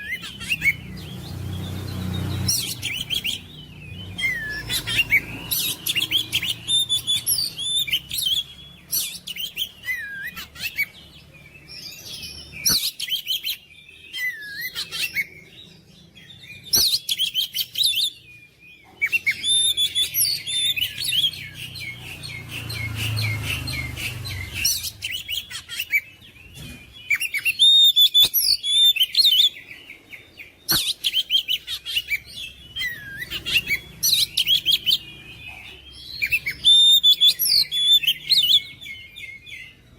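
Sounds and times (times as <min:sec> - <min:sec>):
bird singing whistles and warbles: 0:00.0 - 0:39.9.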